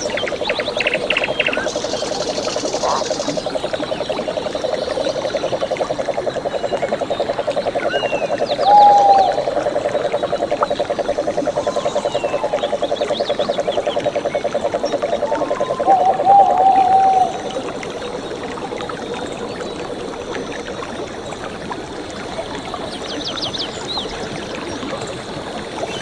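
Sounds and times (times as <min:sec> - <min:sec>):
frogs trilling: 0:00.0 - 0:26.0
birds chirping and whistling: 0:11.6 - 0:12.8, 0:15.2 - 0:17.6.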